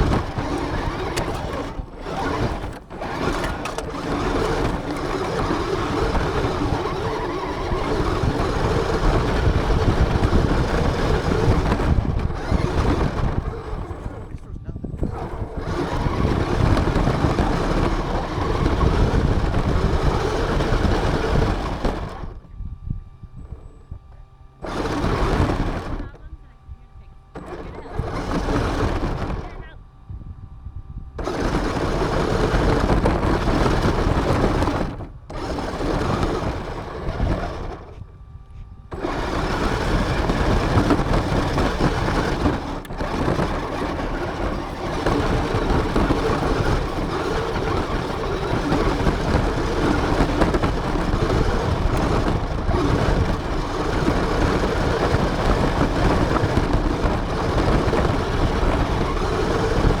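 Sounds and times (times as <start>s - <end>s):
rc car motor buzzing: 0.0s - 22.5s, 23.4s - 26.4s, 27.3s - 29.8s, 31.2s - 38.2s, 38.8s - 60.0s.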